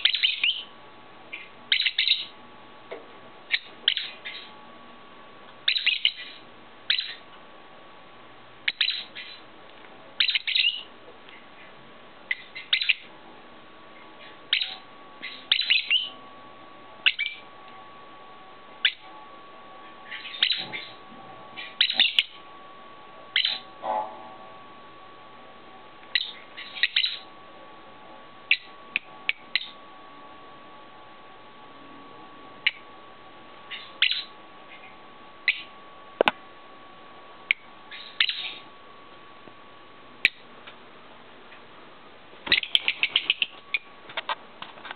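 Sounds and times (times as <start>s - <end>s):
lovebirds chirping: 0.0s - 2.4s, 3.5s - 4.6s, 5.6s - 7.3s, 8.6s - 9.5s, 10.2s - 13.1s, 13.9s - 16.2s, 17.0s - 17.5s, 18.8s - 19.1s, 19.8s - 22.5s, 23.3s - 23.8s, 26.0s - 27.3s, 28.4s - 29.8s, 33.7s - 35.8s, 37.5s - 38.7s, 42.5s - 43.9s
faint steady whine: 0.0s - 44.9s.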